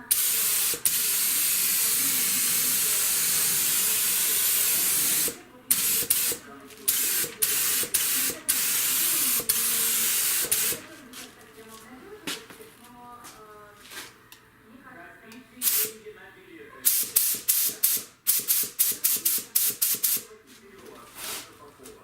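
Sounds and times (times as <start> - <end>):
spray gun hissing: 0.0 - 10.8, 15.6 - 15.9, 16.8 - 20.3.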